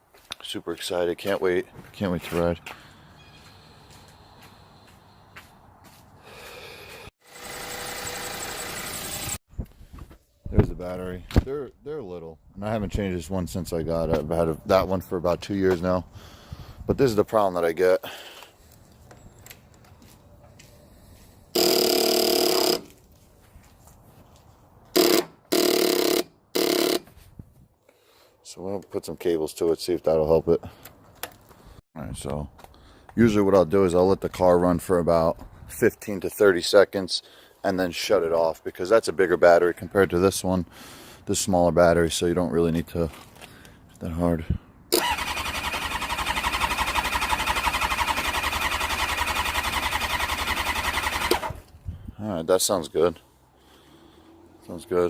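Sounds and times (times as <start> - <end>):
motorcycle electric starter cranking: 7.2 - 9.4, 21.6 - 23.0, 44.9 - 51.7
starter relay buzzing: 7.2 - 9.4, 21.6 - 22.9.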